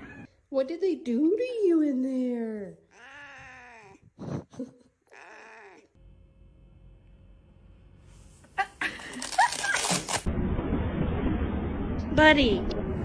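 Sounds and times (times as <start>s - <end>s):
cat meowing: 2.9s - 4.1s, 5.1s - 6.0s.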